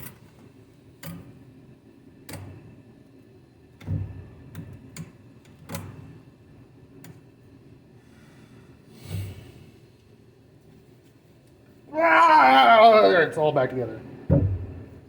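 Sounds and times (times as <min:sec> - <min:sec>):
heavy thump: 0:14.3 - 0:14.9.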